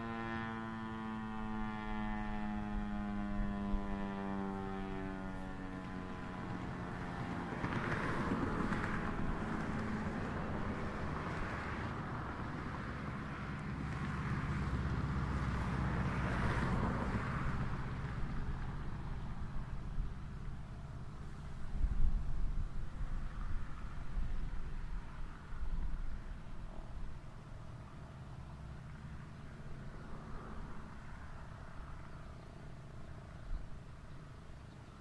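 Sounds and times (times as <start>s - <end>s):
vehicle passing rumble: 0.1s - 35.0s.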